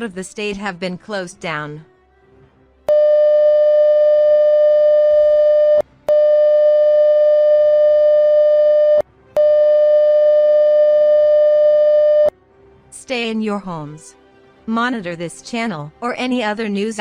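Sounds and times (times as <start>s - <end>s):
loud steady electronic tone: 2.9s - 12.3s.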